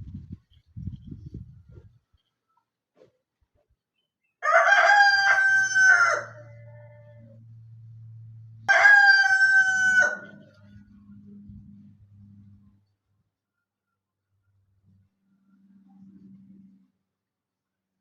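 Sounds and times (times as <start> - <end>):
rooster crowing: 4.4 - 7.5, 8.6 - 10.8.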